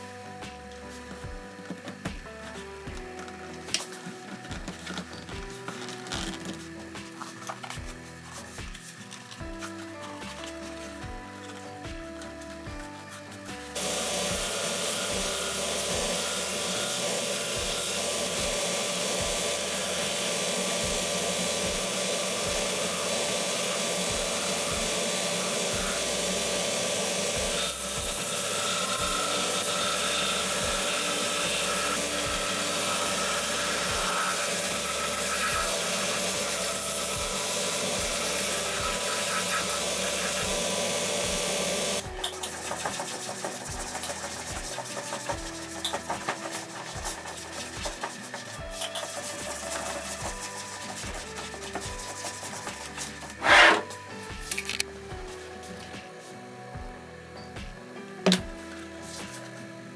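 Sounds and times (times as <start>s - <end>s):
power tool hissing: 13.5s - 54.8s.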